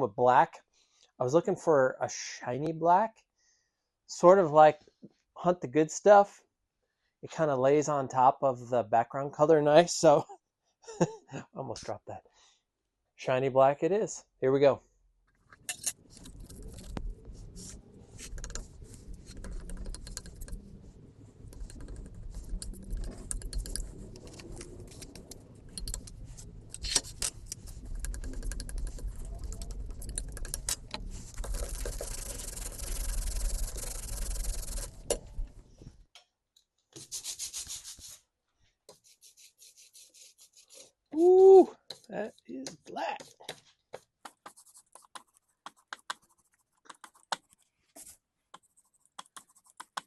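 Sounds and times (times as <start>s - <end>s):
press scraping and rubbing: 15.4s - 35.9s
low rumble: 16.1s - 33.1s.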